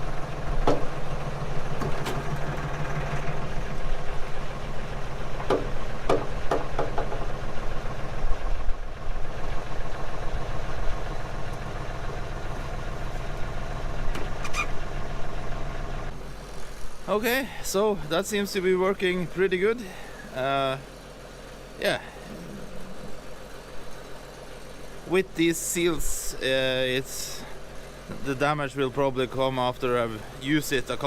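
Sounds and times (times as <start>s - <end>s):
tractor diesel engine idling: 0.0s - 31.0s
short squeaks: 14.1s - 14.9s.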